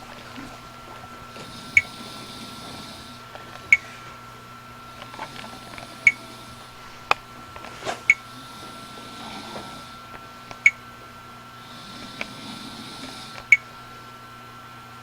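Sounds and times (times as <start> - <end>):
faint high whine: 0.0 - 15.0
sharp clicks: 3.3 - 3.9, 9.6 - 10.8, 13.0 - 13.7.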